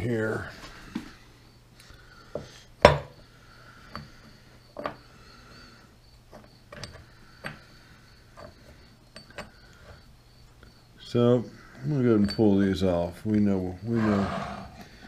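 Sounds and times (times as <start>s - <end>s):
metal parts and tools clicking: 6.2s - 10.1s, 12.1s - 12.9s.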